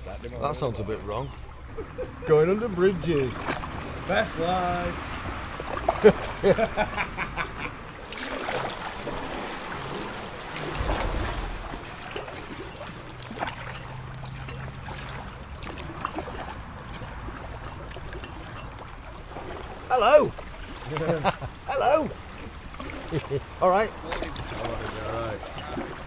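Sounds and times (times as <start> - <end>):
water splashes and drips: 2.8 - 26.0
kayak paddle strokes in water: 4.8 - 26.0
low rumble: 10.5 - 13.2.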